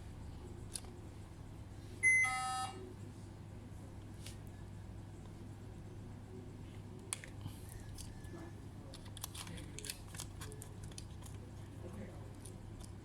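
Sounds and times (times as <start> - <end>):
steady low hum: 0.0 - 13.0
small laptop parts clicking: 8.9 - 11.5.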